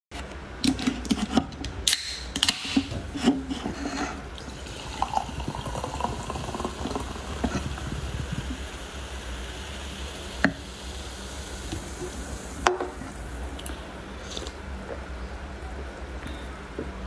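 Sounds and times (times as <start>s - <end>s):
person gulping juice: 4.1s - 9.4s.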